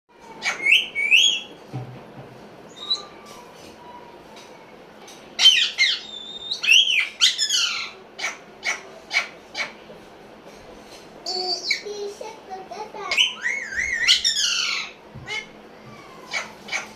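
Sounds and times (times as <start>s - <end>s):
parrot squawks and whistles: 2.7s - 3.4s, 5.4s - 9.7s, 13.1s - 15.4s.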